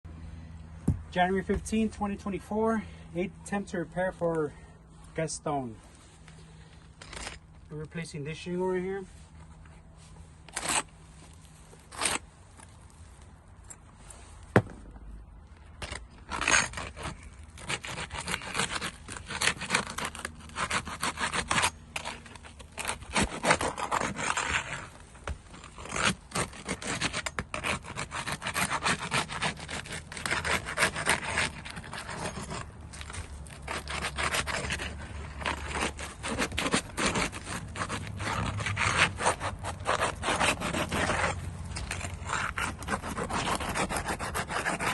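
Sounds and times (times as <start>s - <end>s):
sharp knocks on shingle: 0.8s - 1.7s, 14.5s - 15.1s
hand tool scraping shingle: 0.9s - 9.7s, 10.4s - 15.0s, 15.6s - 44.9s.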